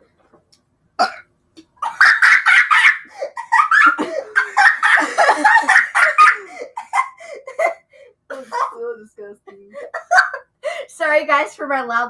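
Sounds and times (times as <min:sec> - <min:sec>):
loud high-pitched laughter: 0:01.8 - 0:07.9.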